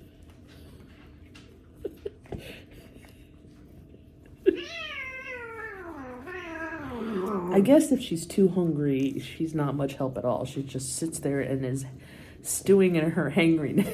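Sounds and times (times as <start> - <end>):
cat meowing: 4.5 - 7.6.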